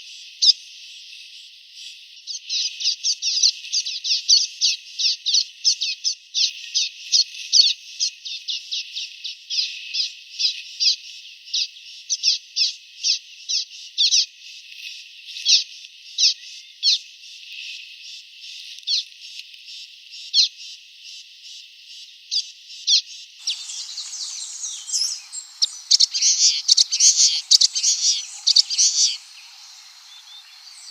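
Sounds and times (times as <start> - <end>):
bird chirping: 23.4 - 30.9.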